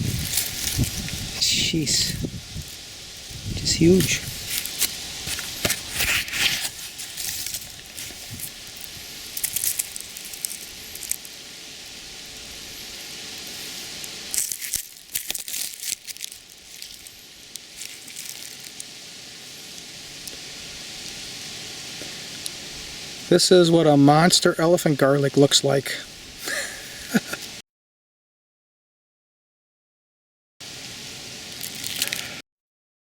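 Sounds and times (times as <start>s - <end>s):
garlic leaves crinkling and rustling: 0.0s - 22.9s, 31.4s - 32.4s
steady hiss: 0.0s - 27.6s, 30.6s - 32.4s.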